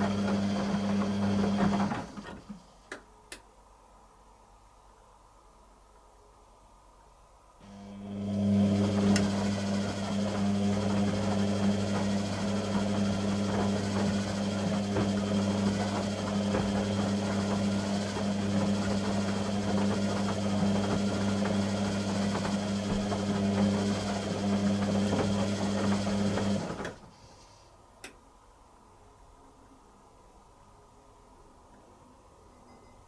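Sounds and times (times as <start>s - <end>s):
washing machine humming: 0.0s - 2.6s, 7.6s - 27.1s.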